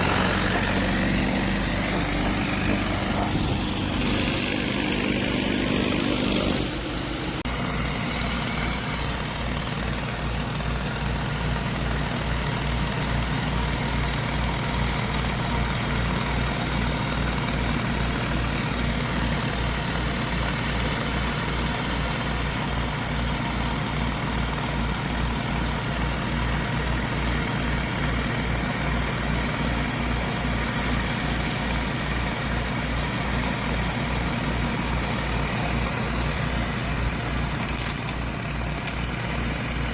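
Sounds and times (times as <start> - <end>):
engine running steadily: 0.0 - 39.9.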